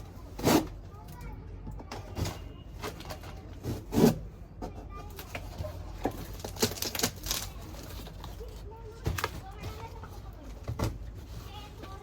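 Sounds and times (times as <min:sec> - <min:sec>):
package rustling and clicking: 0:06.0 - 0:10.1.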